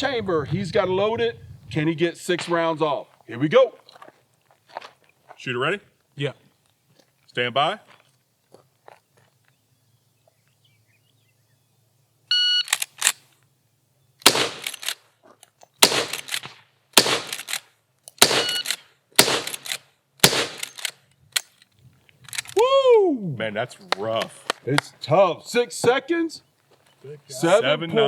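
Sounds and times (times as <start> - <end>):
electronic timer beep: 12.3 - 12.7, 18.4 - 18.7
rifle shots: 14.2 - 15.0, 15.8 - 17.6, 18.2 - 21.0
rifle lever action: 17.3 - 22.6.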